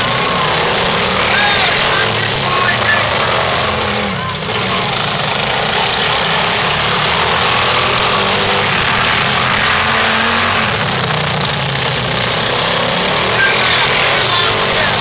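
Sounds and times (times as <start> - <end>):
lawn mower engines racing: 0.0 - 15.0.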